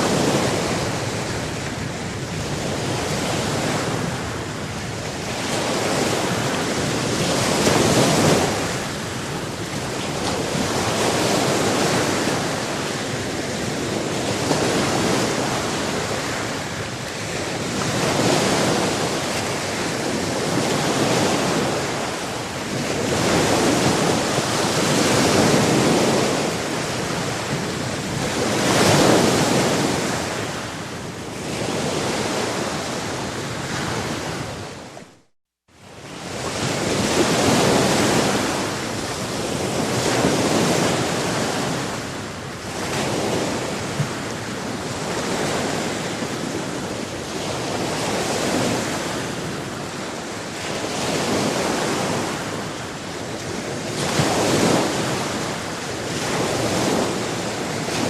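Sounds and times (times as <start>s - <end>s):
sea waves washing onto shore: 0.0s - 35.2s, 35.8s - 58.0s.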